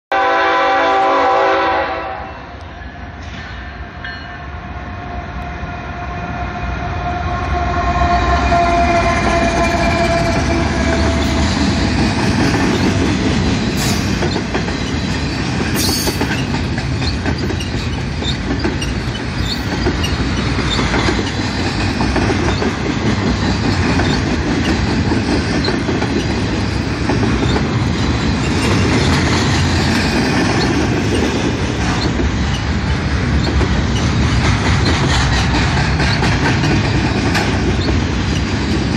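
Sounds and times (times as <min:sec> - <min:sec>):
locomotive horn chord: 0:00.1 - 0:02.6, 0:06.1 - 0:11.4
freight train rumble: 0:00.1 - 0:38.9
train wheels clacking on rails: 0:08.2 - 0:38.9.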